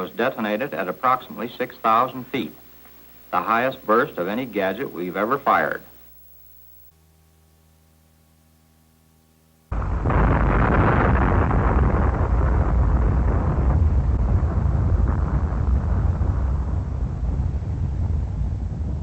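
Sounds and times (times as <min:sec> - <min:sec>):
faint hum: 0:00.0 - 0:19.0
deep explosion rumble: 0:09.7 - 0:19.0.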